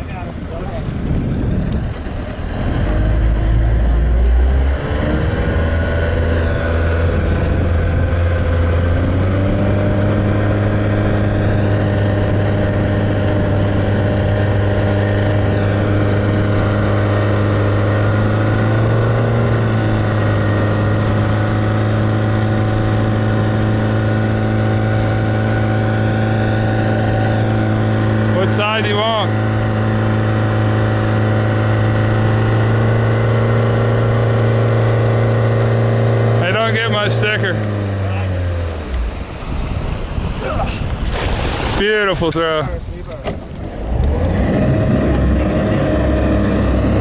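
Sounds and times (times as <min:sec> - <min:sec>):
boat motor running: 0:00.0 - 0:47.0.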